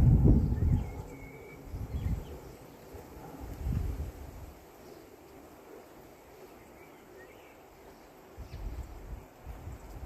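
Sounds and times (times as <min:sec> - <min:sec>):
wind on microphone: 0:00.0 - 0:02.5, 0:03.4 - 0:04.6, 0:08.4 - 0:10.0.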